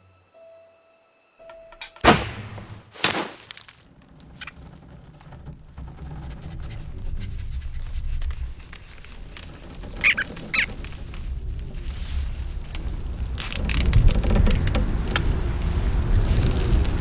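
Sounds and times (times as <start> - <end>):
loud sharp impacts: 1.8 - 3.8.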